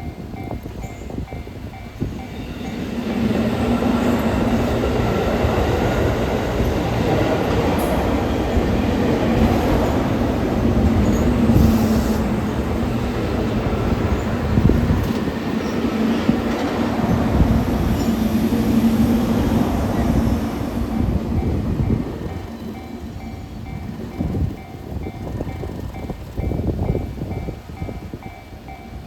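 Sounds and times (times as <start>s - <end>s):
level crossing warning bell: 0.0s - 14.4s, 21.0s - 29.0s
train wheels rumbling on rails: 0.0s - 29.0s.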